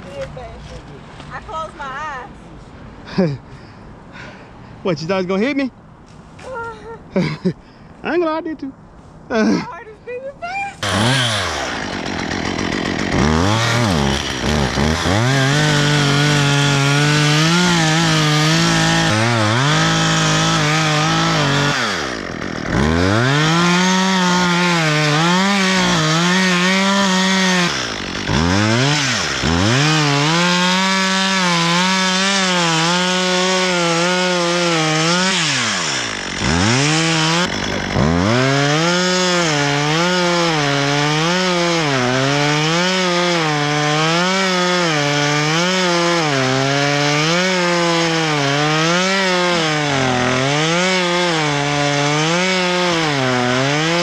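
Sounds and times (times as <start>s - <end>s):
chainsaw cutting wood: 10.8s - 54.0s.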